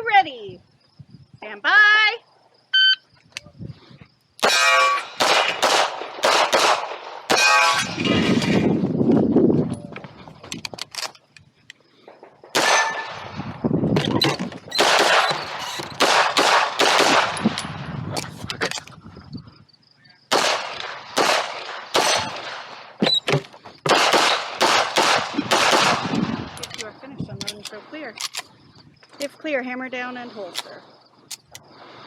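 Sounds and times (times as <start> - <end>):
handgun shots: 4.4 - 8.6, 12.5 - 13.2, 14.7 - 17.6, 20.3 - 22.6, 23.9 - 26.2.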